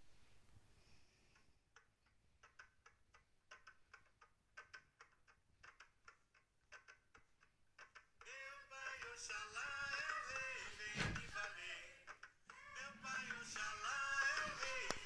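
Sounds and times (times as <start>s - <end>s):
faint sharp rhythmic clicks: 1.3s - 15.0s.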